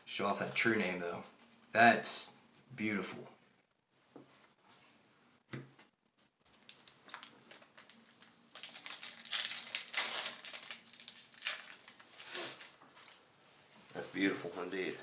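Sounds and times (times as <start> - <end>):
foil crinkling: 6.5 - 13.2.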